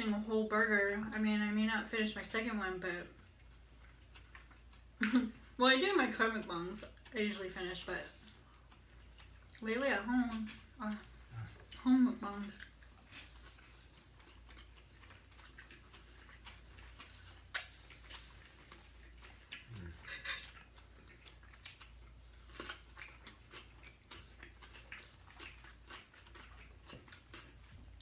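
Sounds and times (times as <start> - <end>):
close-up chewing: 0.0 - 28.0
wet mouth clicks and smacks: 17.4 - 18.2.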